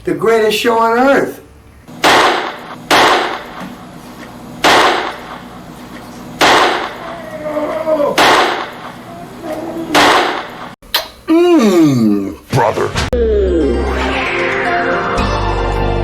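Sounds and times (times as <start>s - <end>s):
loud bangs with ringing tail: 2.0s - 3.7s, 4.6s - 5.5s, 6.4s - 7.0s, 8.2s - 9.0s, 9.9s - 10.8s.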